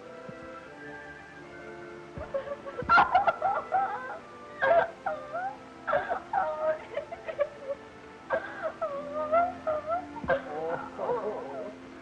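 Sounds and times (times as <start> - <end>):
old film score music: 0.0 - 12.0
wavering crying voice: 2.2 - 12.0.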